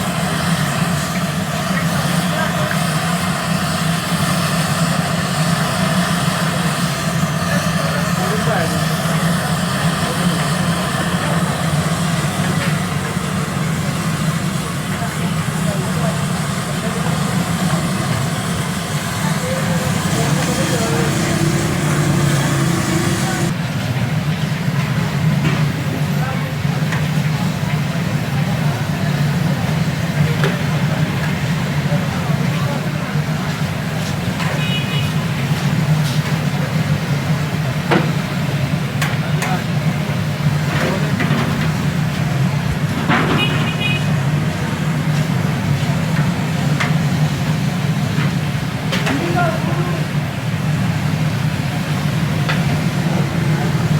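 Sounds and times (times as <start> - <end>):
low mechanical drone: 0.0 - 23.8, 50.7 - 53.9
even hiss: 15.6 - 23.5.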